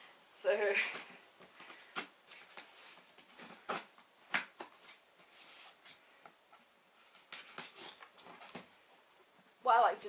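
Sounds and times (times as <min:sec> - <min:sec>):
cardboard rustling and scraping: 0:01.5 - 0:09.3.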